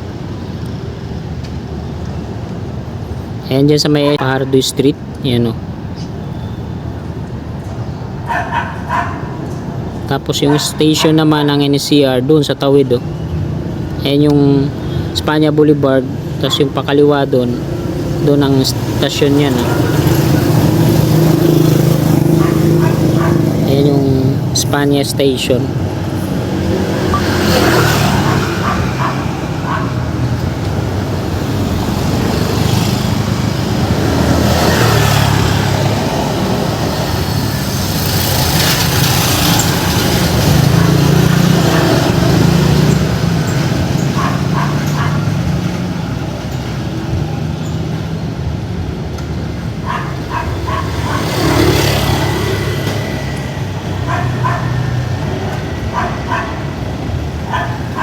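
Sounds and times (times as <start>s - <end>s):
cars passing: 0.0s - 58.0s
vehicle engines running: 0.0s - 58.0s
dog barking: 8.3s - 9.4s, 10.4s - 11.3s, 16.4s - 16.8s, 21.7s - 23.6s, 26.9s - 30.2s, 40.7s - 42.6s, 44.0s - 45.5s, 49.8s - 52.6s, 53.9s - 56.8s, 57.4s - 58.0s.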